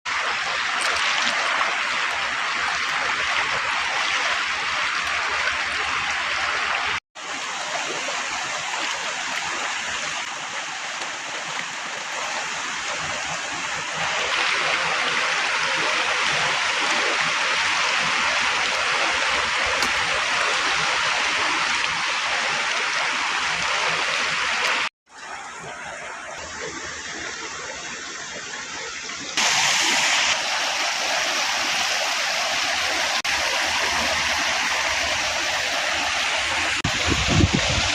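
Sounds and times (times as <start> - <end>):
river water rushing: 0.1 - 37.9.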